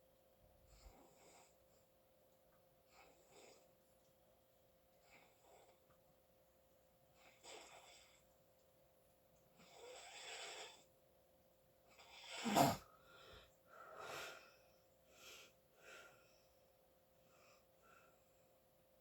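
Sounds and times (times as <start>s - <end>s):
person snoring: 12.2s - 12.8s
breathing: 12.9s - 16.6s, 17.2s - 18.6s.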